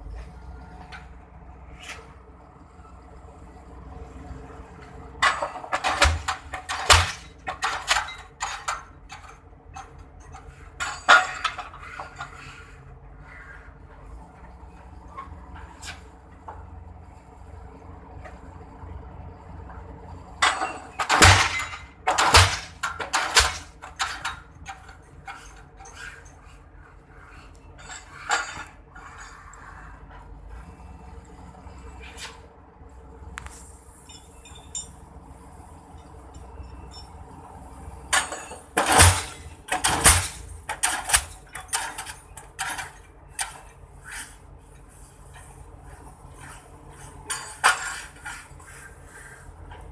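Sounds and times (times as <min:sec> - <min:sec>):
low steady rumble: 0:00.0 - 0:49.9
metallic clanks and clinks: 0:05.2 - 0:12.4, 0:20.3 - 0:26.5, 0:27.8 - 0:29.4, 0:34.0 - 0:35.1, 0:35.9 - 0:37.4, 0:38.1 - 0:43.8
pile-driving hammer striking: 0:21.0 - 0:23.6, 0:38.8 - 0:40.4.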